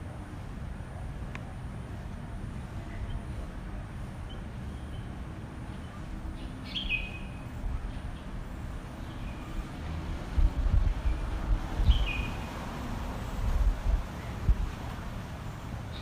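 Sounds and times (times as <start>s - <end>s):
steady low rumble: 0.0s - 16.0s
birds chirping: 2.3s - 10.0s, 11.0s - 12.6s, 15.8s - 16.0s.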